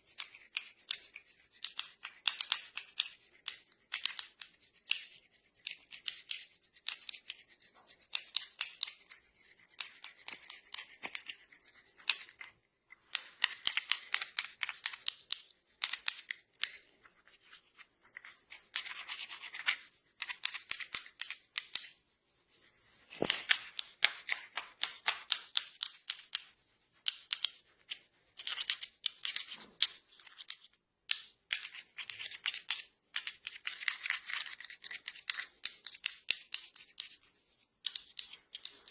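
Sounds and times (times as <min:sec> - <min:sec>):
hands scratching through hair: 0:22.3 - 0:24.9.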